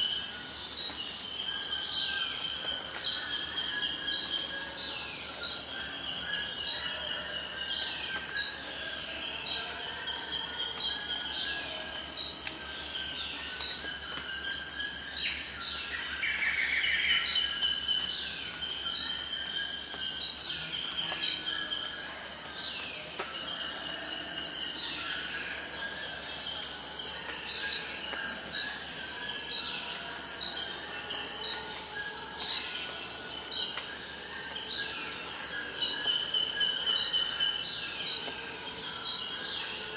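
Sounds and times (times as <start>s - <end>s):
high-pitched insect drone: 24.3s - 33.6s.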